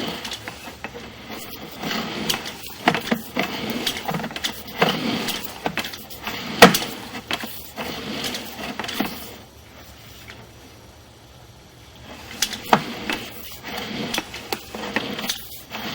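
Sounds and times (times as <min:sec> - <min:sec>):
clattering knocks and scraping rattles: 0:00.0 - 0:09.5, 0:12.1 - 0:15.9.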